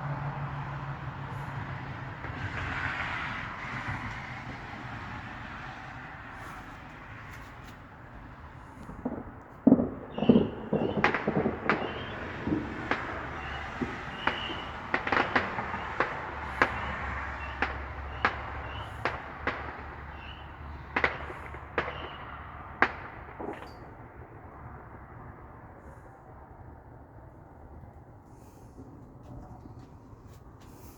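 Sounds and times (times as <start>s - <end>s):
fireworks bangs and cracks: 1.2s - 24.0s
gunshots: 8.6s - 23.9s.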